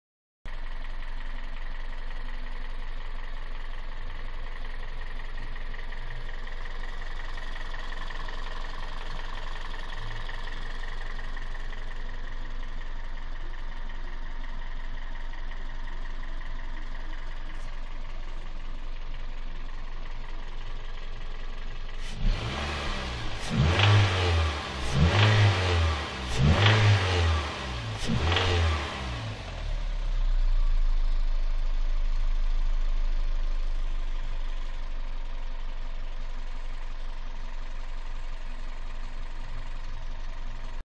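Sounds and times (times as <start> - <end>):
car engine idling: 0.5 - 40.8
engine throttle blips: 22.0 - 31.0.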